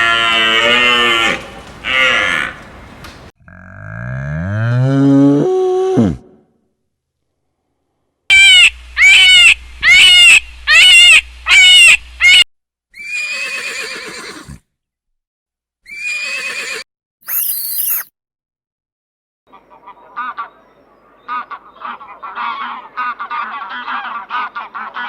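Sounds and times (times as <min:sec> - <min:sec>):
farm animal calls: 0:00.0 - 0:03.3.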